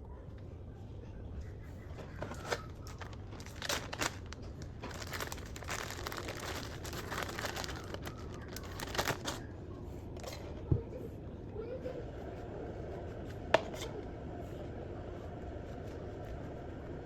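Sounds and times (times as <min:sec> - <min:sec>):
plastic bag crinkling: 0:02.2 - 0:09.5.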